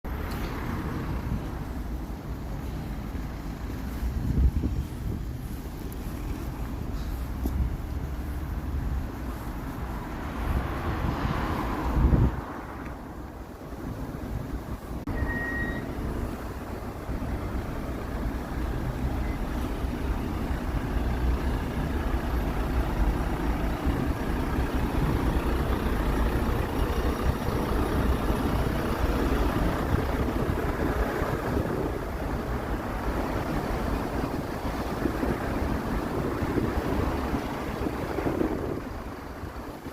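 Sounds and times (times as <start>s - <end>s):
road vehicles rumbling: 0.0s - 39.9s
short high beep: 15.1s - 16.0s.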